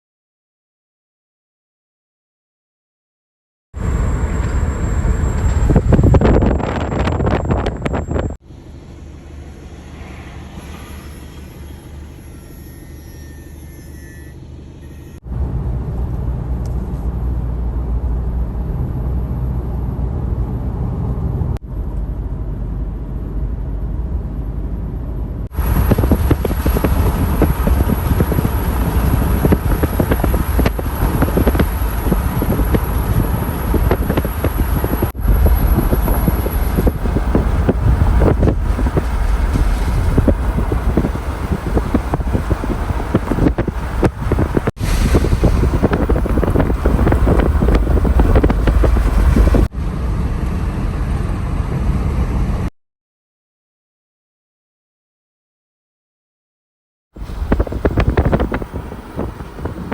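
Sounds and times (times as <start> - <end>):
wind buffeting microphone: 3.8 - 8.4, 25.5 - 52.7, 57.2 - 59.9
low rumble: 3.8 - 11.9, 15.3 - 52.7, 57.2 - 59.9.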